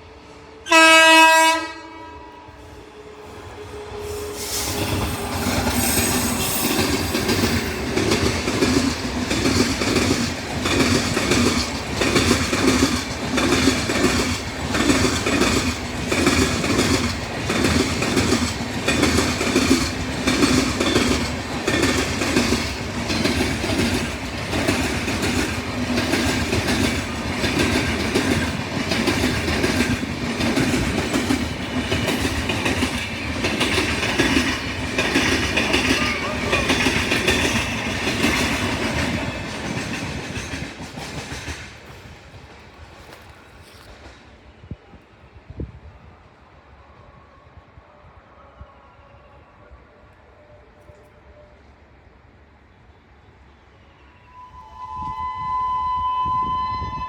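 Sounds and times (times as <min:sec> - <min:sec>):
train passing with rumble: 0:00.0 - 0:57.0
locomotive horn honk: 0:00.7 - 0:02.6.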